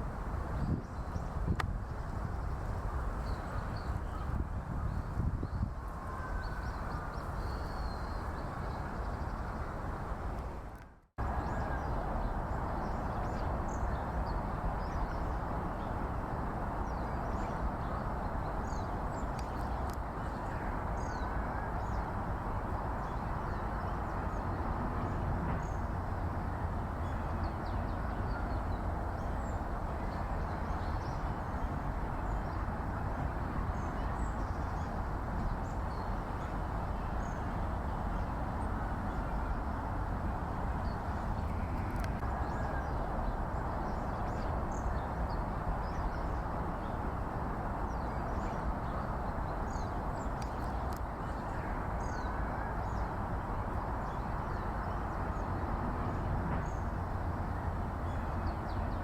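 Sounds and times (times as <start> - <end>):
distant traffic rumble: 0.0 - 59.0.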